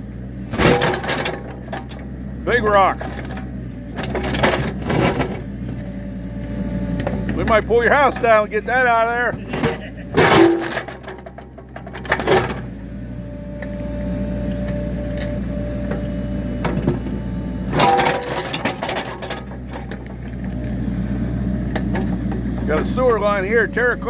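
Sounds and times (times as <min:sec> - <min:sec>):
excavator engine running: 0:00.0 - 0:24.0
hydraulic whine: 0:00.0 - 0:24.0
bucket scraping dirt and rock: 0:00.5 - 0:05.8, 0:06.8 - 0:12.8, 0:16.6 - 0:23.8.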